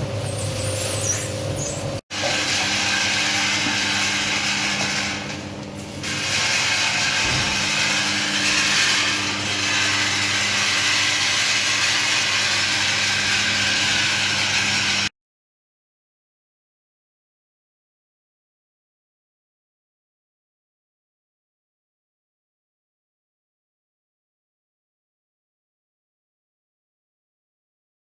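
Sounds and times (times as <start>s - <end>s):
drying machine motor hum: 0.0s - 15.1s.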